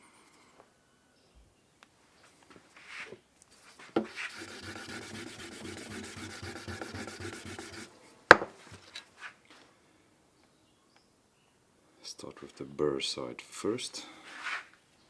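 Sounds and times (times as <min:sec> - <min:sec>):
rubbing on sharpening surface: 0:04.0 - 0:07.9.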